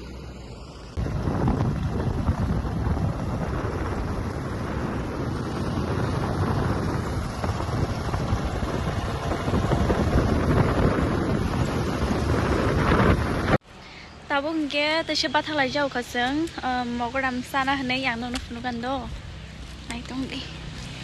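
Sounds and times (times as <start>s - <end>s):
wind buffeting microphone: 0.8s - 13.6s.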